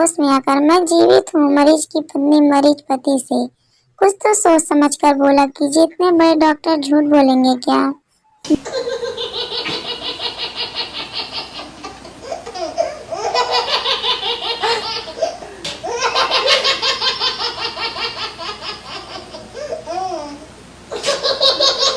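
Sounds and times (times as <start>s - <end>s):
rapid rhythmic laughing: 8.5s - 19.8s.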